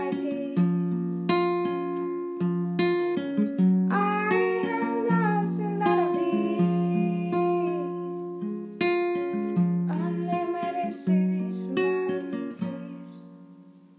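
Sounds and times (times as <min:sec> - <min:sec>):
acoustic guitar strummed chords: 0:00.0 - 0:13.9.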